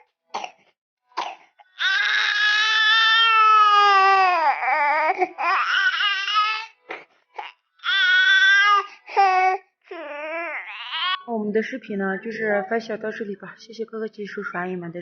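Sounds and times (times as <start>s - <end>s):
baby coughing: 0.3s - 1.8s
baby crying: 1.6s - 11.3s.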